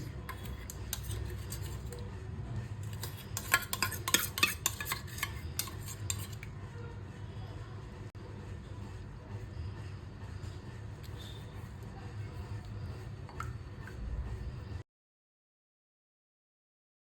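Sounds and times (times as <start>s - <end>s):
steady low hum: 0.0s - 14.8s.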